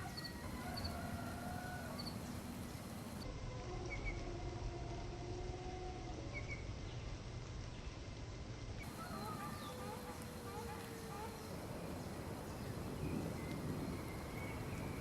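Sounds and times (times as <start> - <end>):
low steady background noise: 0.0 - 15.0
small birds chirping: 1.8 - 3.2, 8.8 - 15.0
distant animal calls: 8.9 - 11.6.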